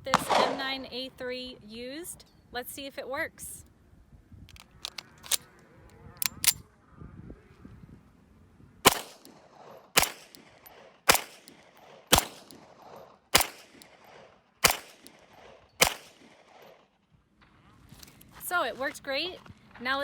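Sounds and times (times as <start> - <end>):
pistol shots: 0.1 - 0.8, 8.8 - 16.8.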